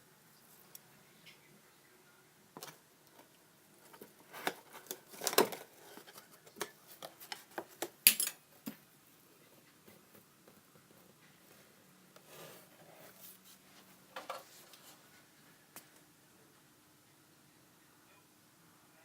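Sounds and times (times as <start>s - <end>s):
paper rustling: 3.8s - 8.0s.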